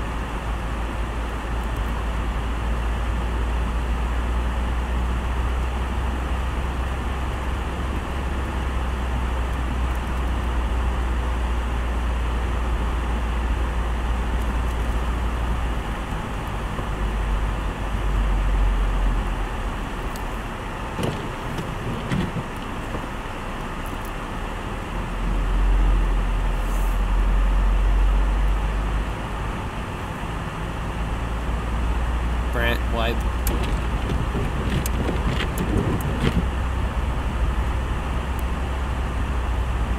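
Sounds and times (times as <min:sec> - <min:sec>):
tyre and road noise: 0:00.0 - 0:39.9
deep low rumble: 0:31.4 - 0:39.9.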